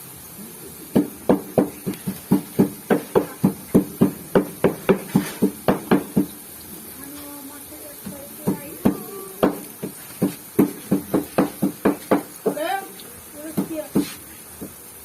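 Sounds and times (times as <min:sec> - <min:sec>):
rapid ringing knocks: 0:01.0 - 0:06.4, 0:08.0 - 0:12.8, 0:13.5 - 0:14.8.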